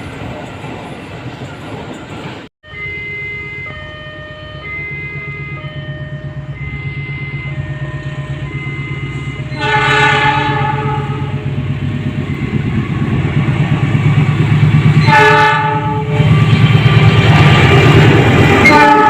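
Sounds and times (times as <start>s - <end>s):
passing train throbbing: 0.0s - 19.0s
locomotive horn blasts: 2.7s - 11.5s, 15.0s - 17.0s, 18.5s - 19.0s.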